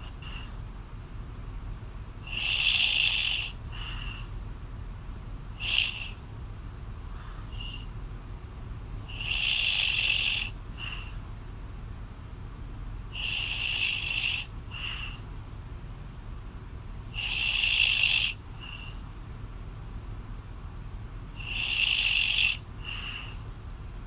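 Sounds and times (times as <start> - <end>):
quiet breath: 0.0 - 0.6, 2.2 - 4.4, 7.0 - 8.0, 9.1 - 11.3, 13.1 - 15.3, 17.1 - 19.2, 21.4 - 23.6
woman snoring over phone: 2.3 - 3.6, 9.1 - 11.2, 13.2 - 15.2, 17.2 - 19.0, 21.4 - 23.4.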